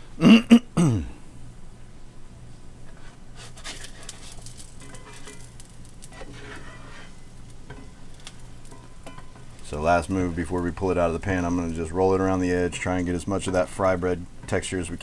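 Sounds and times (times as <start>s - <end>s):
brief vocal sound: 0.2s - 1.2s
pancake sizzling in a pan: 2.8s - 15.0s
utensil scraping and tapping pan: 2.9s - 15.0s.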